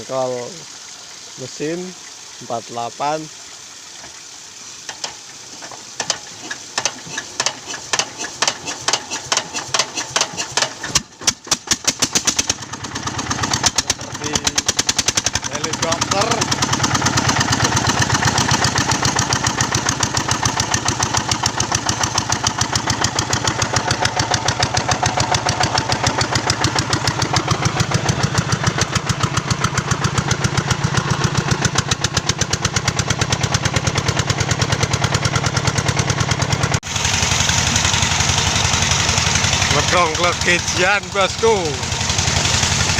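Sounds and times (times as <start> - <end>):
engine pulsing steadily: 11.8 - 42.9.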